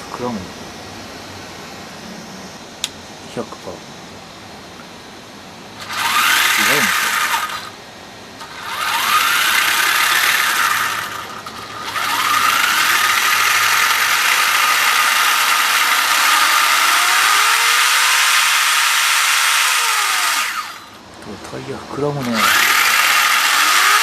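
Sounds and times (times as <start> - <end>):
rc car motor whining: 5.8 - 7.8, 8.4 - 21.0, 22.1 - 24.0.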